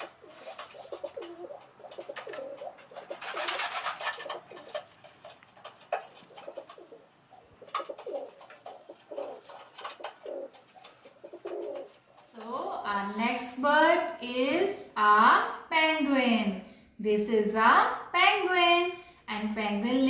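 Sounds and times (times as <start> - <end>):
pigeons cooing: 0.0 - 12.4
loud rustling: 0.0 - 12.7.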